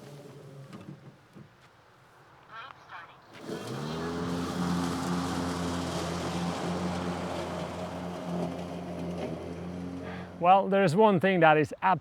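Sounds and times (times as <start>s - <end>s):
electric lawn mower motors humming: 3.3s - 10.4s.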